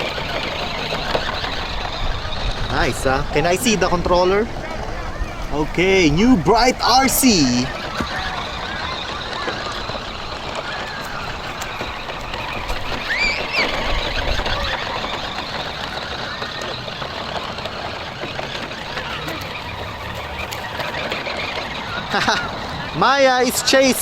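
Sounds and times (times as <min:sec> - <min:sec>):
toy truck electric motor whir: 0:00.0 - 0:24.0
tyre noise over ground: 0:00.0 - 0:24.0
high squeak: 0:06.0 - 0:23.8.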